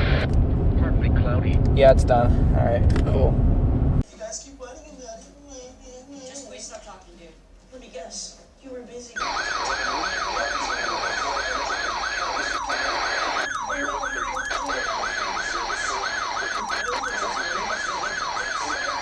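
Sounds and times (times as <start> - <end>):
electronic siren sweeping: 9.2 - 19.0.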